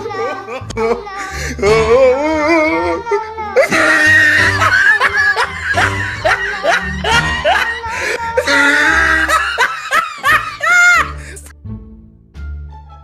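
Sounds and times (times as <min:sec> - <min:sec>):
background music: 0:00.0 - 0:13.0
people laughing: 0:03.6 - 0:11.5.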